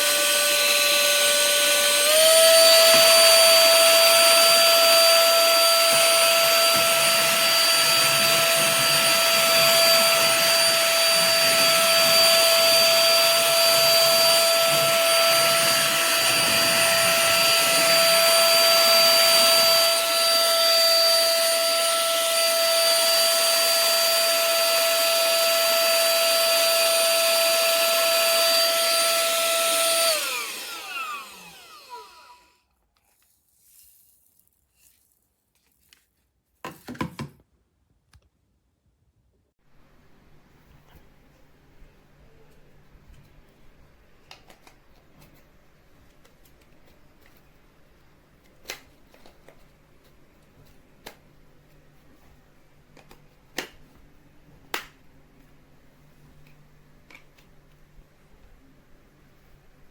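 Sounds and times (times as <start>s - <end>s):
handheld vacuum cleaner whining: 0.0s - 32.6s.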